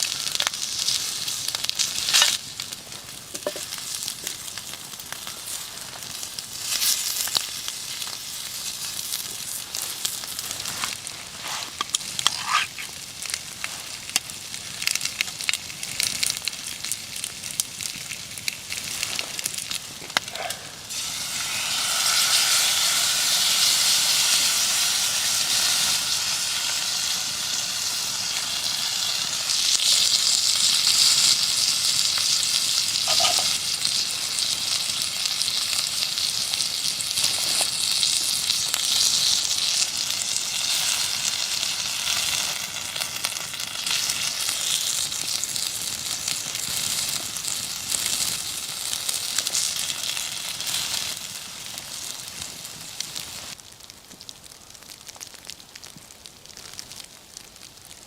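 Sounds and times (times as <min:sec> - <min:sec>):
food sizzling in hot pan: 0:00.0 - 0:53.7
stirring in pan: 0:08.9 - 0:13.0, 0:33.1 - 0:33.6.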